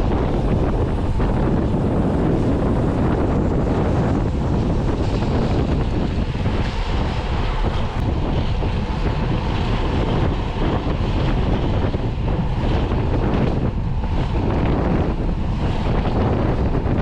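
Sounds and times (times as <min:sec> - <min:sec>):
wind buffeting microphone: 0:00.0 - 0:17.0.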